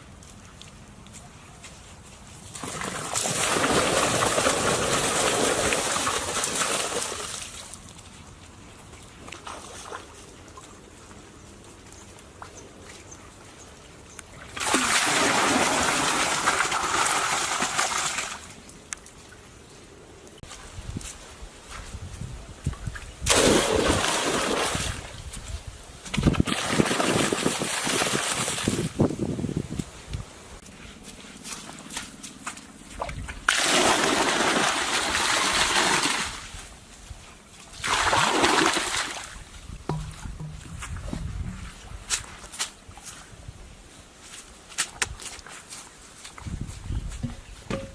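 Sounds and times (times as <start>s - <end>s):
water pouring and splashing: 2.5s - 8.2s, 14.4s - 18.6s, 22.9s - 25.4s, 26.0s - 29.1s, 31.4s - 36.7s, 37.6s - 43.1s
faint small ticks and knocks: 39.9s - 41.6s.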